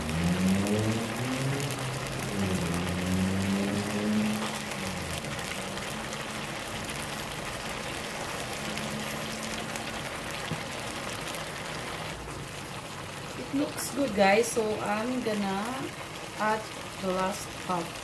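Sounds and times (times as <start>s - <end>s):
liver sizzling in a frying pan: 0.0s - 18.0s.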